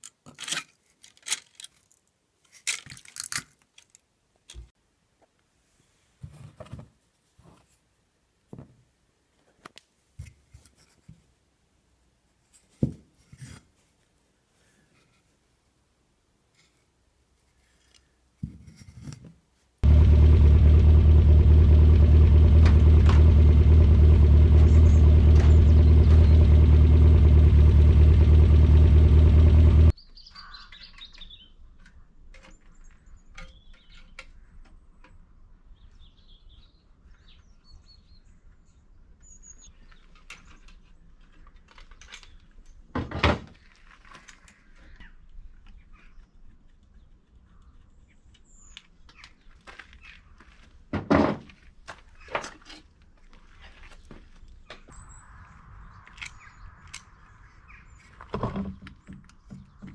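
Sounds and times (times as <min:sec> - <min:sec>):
car engine running: 0:19.8 - 0:29.9
birds chirping: 0:24.4 - 0:26.8, 0:29.9 - 0:40.7, 0:53.9 - 0:59.9.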